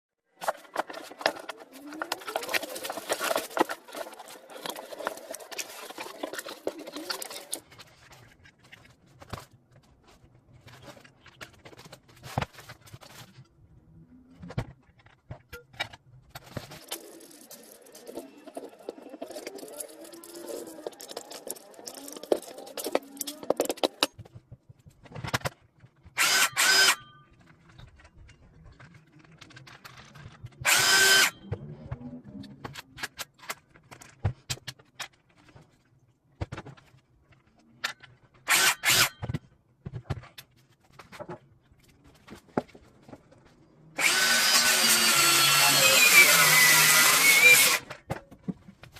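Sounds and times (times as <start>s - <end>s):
cordless drill whining: 26.2s - 27.0s, 30.6s - 31.4s, 38.5s - 39.1s, 44.0s - 47.9s.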